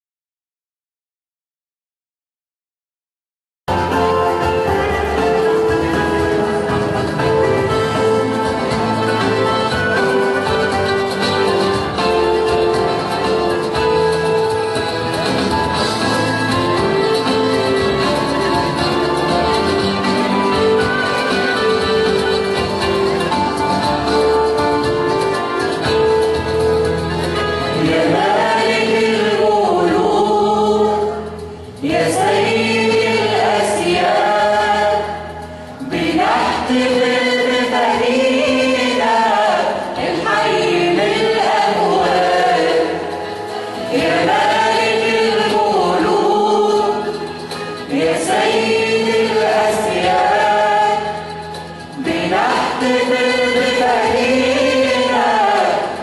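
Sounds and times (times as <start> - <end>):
church choir singing a hymn: 27.7 - 56.0.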